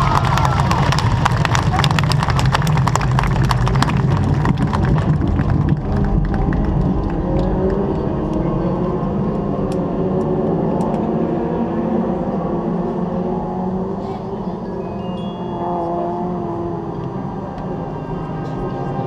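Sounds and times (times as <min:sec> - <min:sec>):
wind instruments sustained chords: 0:05.9 - 0:19.0.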